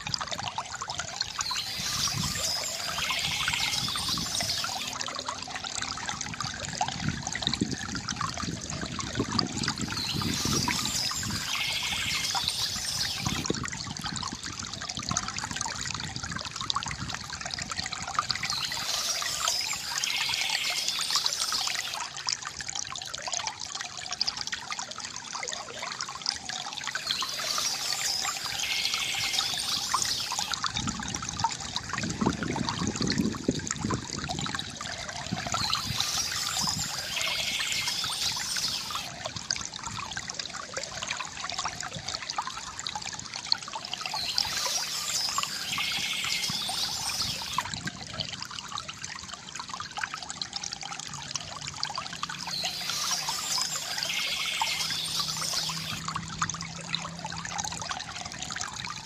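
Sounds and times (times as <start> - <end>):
stream trickling and splashing: 0.0 - 59.0
bird singing: 1.2 - 5.0, 9.7 - 13.4, 18.4 - 22.0, 26.9 - 30.6, 35.4 - 39.1, 44.0 - 47.6, 52.4 - 56.0.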